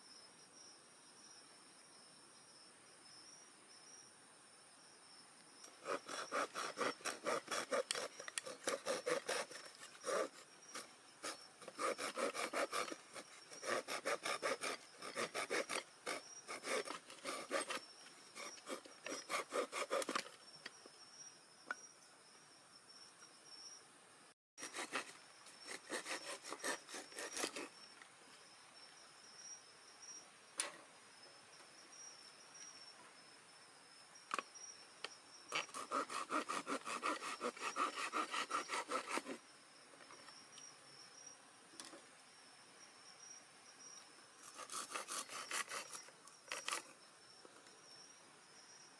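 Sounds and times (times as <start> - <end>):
crickets and insects droning: 0.0 - 48.9
hand saw rasping through wood: 5.7 - 17.8, 18.4 - 20.3, 24.6 - 27.7, 35.5 - 39.4, 44.4 - 46.8.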